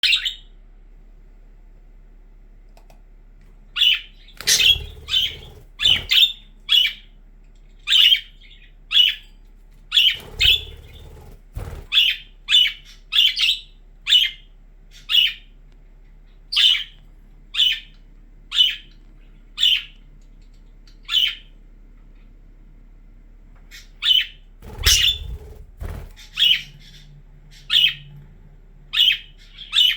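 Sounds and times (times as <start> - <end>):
budgerigars chirping: 3.8 - 7.1, 7.9 - 9.2, 9.9 - 15.5, 16.5 - 17.0, 18.5 - 18.9, 19.6 - 20.0, 21.0 - 21.5, 23.7 - 28.1, 28.9 - 29.9.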